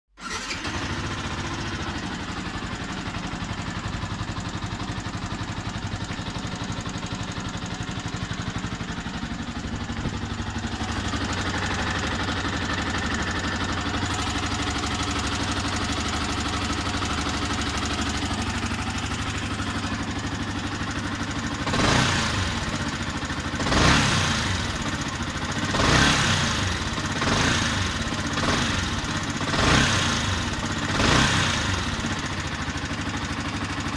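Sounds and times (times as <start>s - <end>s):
engine revving: 0.2s - 1.9s, 21.6s - 32.0s
engine ticking: 0.2s - 33.9s
motorcycle engine idling: 0.2s - 33.9s.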